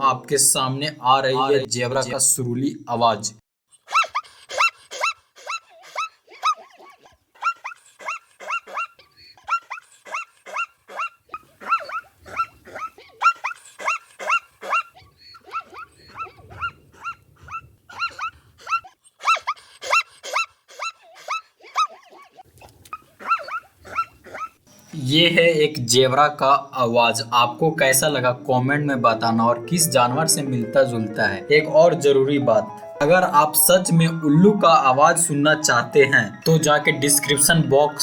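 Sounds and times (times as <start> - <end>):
zebra barking: 10.1 - 21.0, 22.9 - 24.6.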